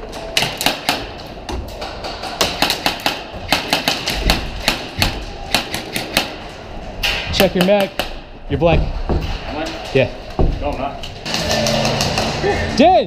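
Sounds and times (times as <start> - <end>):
airsoft guns firing: 0.3 - 1.2, 2.2 - 6.4.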